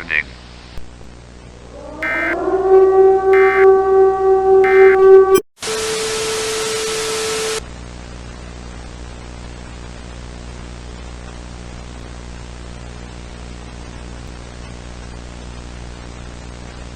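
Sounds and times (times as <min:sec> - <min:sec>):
static with steady tone: 0:00.0 - 0:16.9
low hum: 0:01.3 - 0:06.6
electronic alert siren tone: 0:01.6 - 0:07.6
static hiss: 0:04.6 - 0:07.6.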